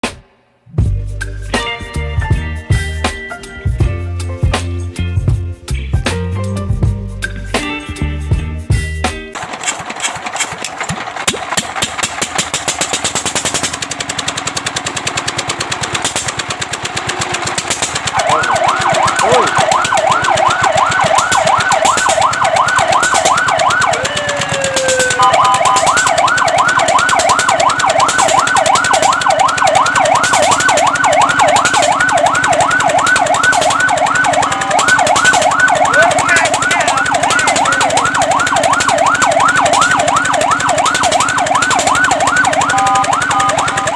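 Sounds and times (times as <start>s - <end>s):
engine clatter: 9.4s - 43.9s
fire truck siren yelping: 12.4s - 43.9s.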